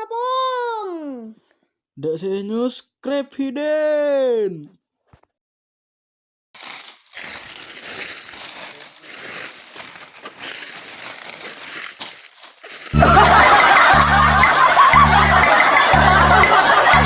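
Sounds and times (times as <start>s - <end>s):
rustling and crinkling: 6.6s - 13.0s
loud music: 13.0s - 17.0s.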